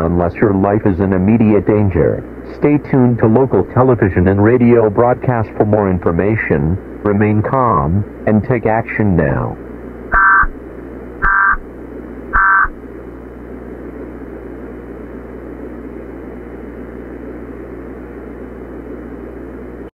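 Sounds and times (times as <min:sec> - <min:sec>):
static hiss: 0:00.0 - 0:19.9
emergency alert data tones: 0:10.1 - 0:10.6, 0:11.2 - 0:11.7, 0:12.3 - 0:12.8.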